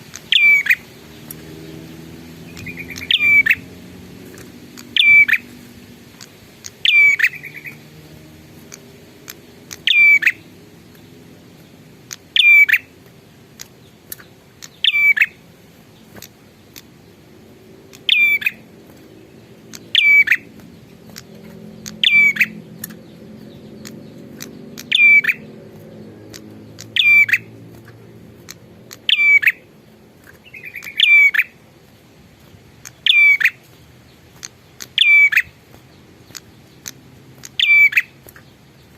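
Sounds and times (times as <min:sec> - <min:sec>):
songbird calling: 0:00.0 - 0:38.9.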